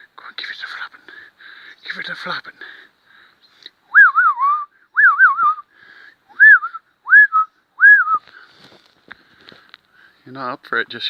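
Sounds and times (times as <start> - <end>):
person whistling: 3.9 - 5.7, 6.3 - 8.2.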